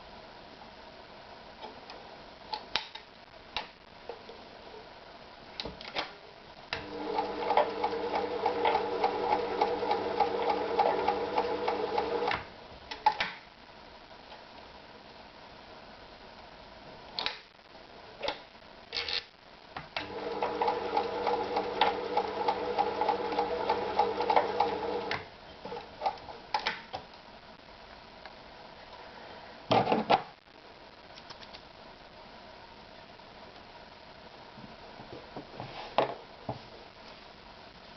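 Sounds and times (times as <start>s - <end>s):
sewing machine running: 6.8s - 12.3s, 20.0s - 25.1s.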